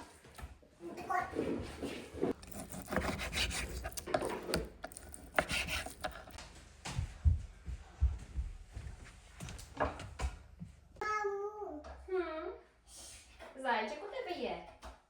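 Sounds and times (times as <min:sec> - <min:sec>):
scraping on wooden cutting board: 0:01.4 - 0:06.4.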